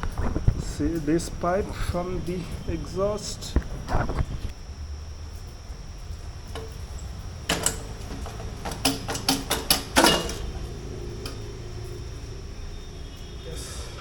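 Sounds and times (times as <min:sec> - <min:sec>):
metal knocks and clanks: 0:06.5 - 0:10.6.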